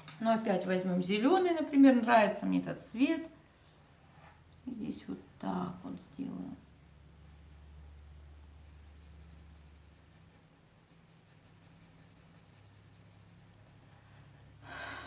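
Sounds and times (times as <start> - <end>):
marker scratching on paper: 8.6 - 13.8.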